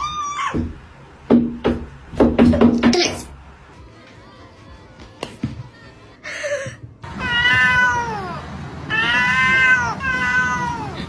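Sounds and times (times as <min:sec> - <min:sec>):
cat meowing: 0:07.1 - 0:11.0.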